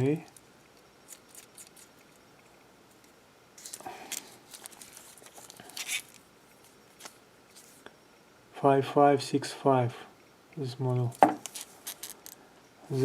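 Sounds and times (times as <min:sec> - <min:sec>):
wristwatch handling clicks and rustles: 0:11.4 - 0:12.4.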